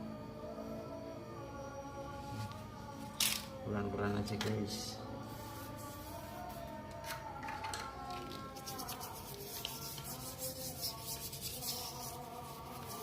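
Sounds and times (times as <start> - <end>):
scrubbing on metal: 8.5 - 13.0.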